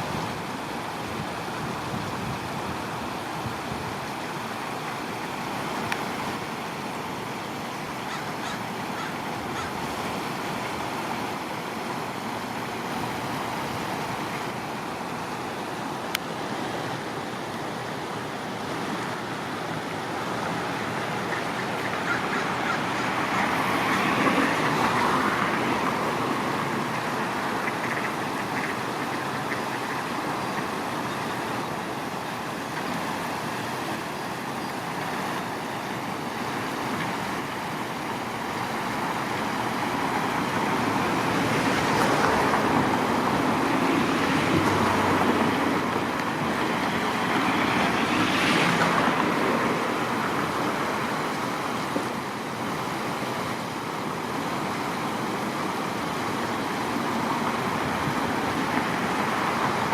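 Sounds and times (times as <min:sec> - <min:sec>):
distant road traffic: 0:02.2 - 0:59.9
ducks quacking: 0:21.2 - 0:25.4, 0:27.5 - 0:30.7.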